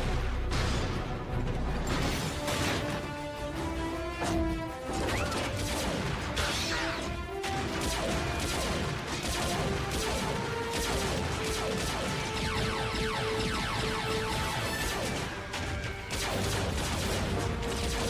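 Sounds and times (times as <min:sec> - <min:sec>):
dramatic orchestral score: 0:00.0 - 0:18.0
blaster shots: 0:04.9 - 0:18.0.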